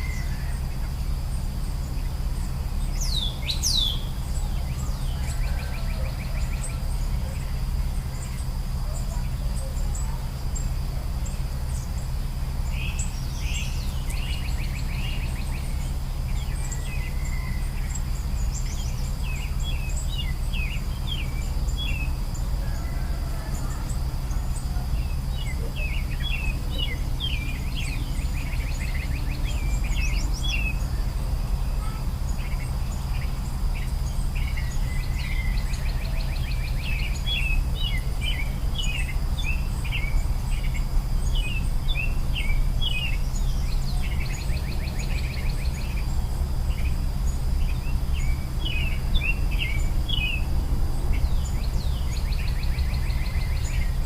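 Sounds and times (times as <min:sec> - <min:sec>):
birds chirping with trills: 0:00.0 - 0:54.0
high insect drone: 0:00.0 - 0:54.0
low rumble: 0:23.9 - 0:54.0.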